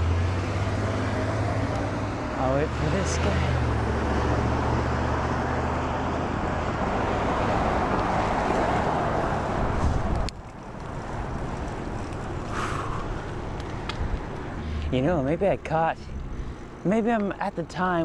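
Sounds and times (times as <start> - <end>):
car passing by: 0.0 - 11.6
street noise: 0.0 - 18.0.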